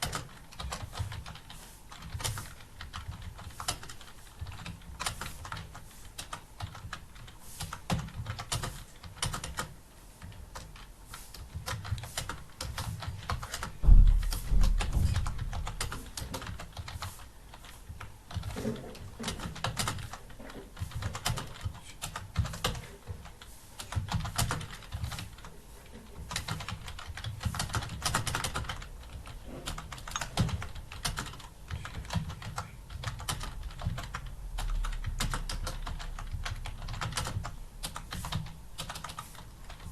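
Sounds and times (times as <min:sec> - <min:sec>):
fast typing on keyboard: 0:00.0 - 0:39.9
dull thump: 0:13.8 - 0:15.7.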